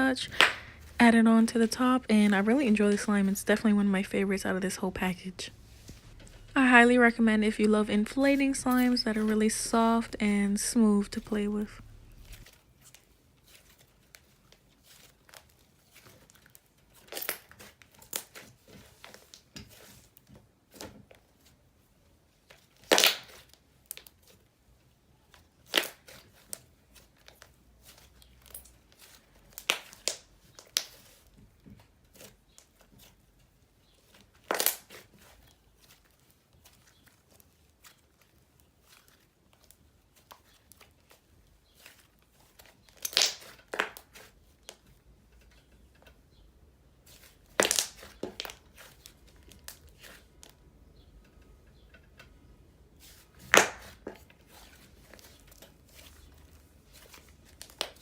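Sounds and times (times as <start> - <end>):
faint crackling: 0.0 - 16.4
slime stretched and squeezed: 42.7 - 44.3, 47.1 - 50.2
sharp pops and clicks: 42.9 - 46.2, 47.5 - 48.6.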